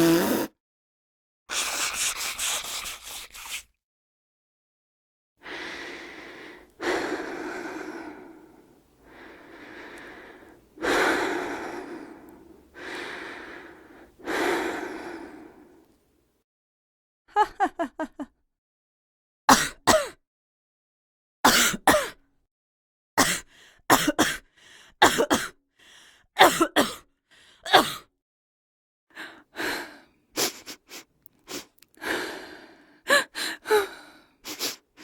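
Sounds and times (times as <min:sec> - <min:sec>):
woman coughing: 0:19.5 - 0:20.2, 0:21.5 - 0:22.2, 0:23.2 - 0:24.4, 0:25.0 - 0:25.5, 0:26.4 - 0:27.0.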